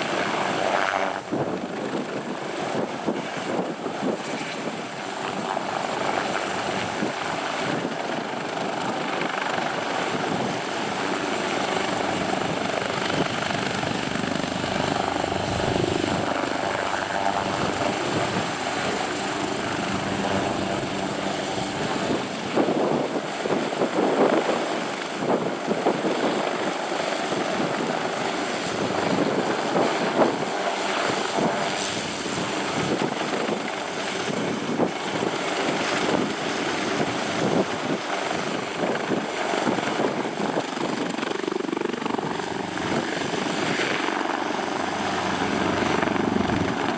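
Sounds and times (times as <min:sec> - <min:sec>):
helicopter rotor noise: 0:00.0 - 0:46.9
high turbine whine: 0:10.4 - 0:24.4, 0:27.3 - 0:46.9.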